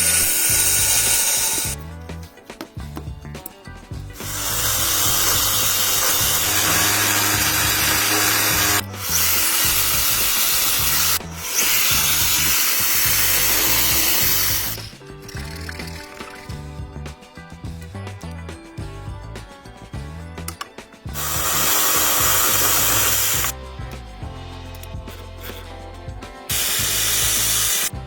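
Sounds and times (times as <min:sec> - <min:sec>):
power tool grinding steel: 0:00.0 - 0:01.8, 0:04.2 - 0:16.0, 0:21.1 - 0:23.5, 0:26.5 - 0:27.9
background music with bass line: 0:00.0 - 0:28.0.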